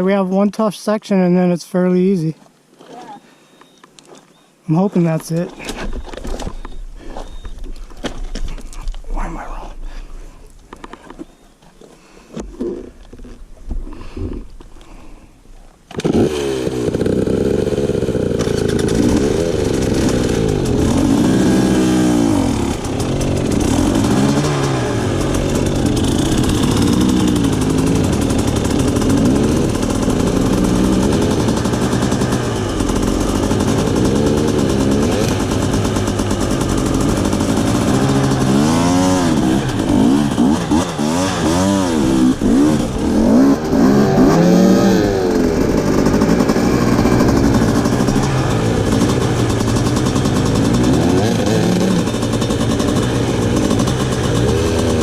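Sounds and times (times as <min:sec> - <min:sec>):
dirt bike engine revving: 0:15.9 - 0:55.0.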